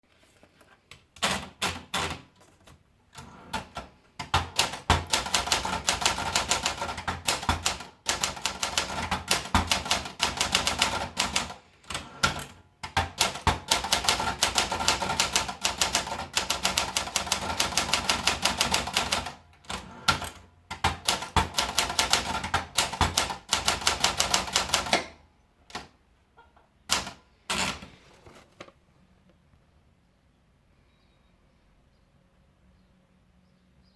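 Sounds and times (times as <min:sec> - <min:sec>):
manual typewriter keystrokes: 0:00.9 - 0:26.0, 0:26.9 - 0:27.9.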